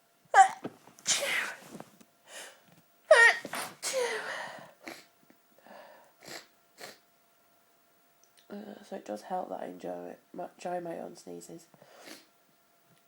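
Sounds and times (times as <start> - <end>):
woman sneezing: 0.4 - 1.6, 3.1 - 4.4.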